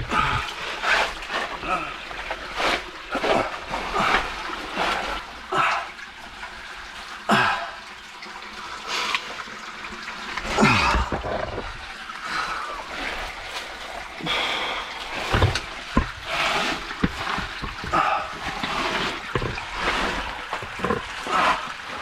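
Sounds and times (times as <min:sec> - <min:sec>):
water splashing and sloshing: 0:00.0 - 0:22.0
body scraping on rock: 0:15.1 - 0:21.7.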